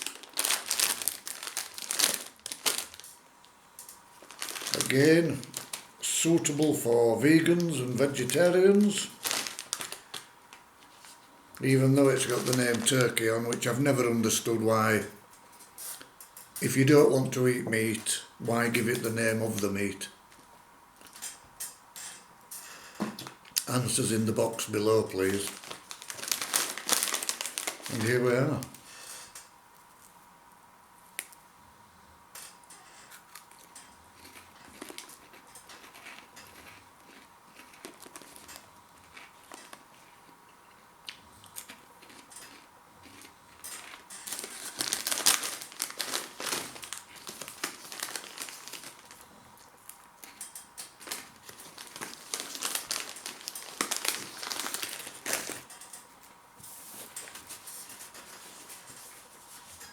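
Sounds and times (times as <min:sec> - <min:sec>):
plastic snack packet crinkling: 0:00.0 - 0:15.0, 0:23.2 - 0:29.5, 0:33.1 - 0:40.2, 0:41.5 - 0:55.8.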